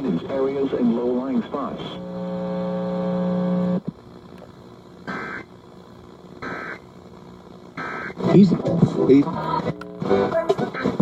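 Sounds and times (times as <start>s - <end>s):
steady low buzzing tone: 0.0s - 11.0s
digital data tone bursts: 5.1s - 5.5s, 6.4s - 6.8s, 7.8s - 8.4s.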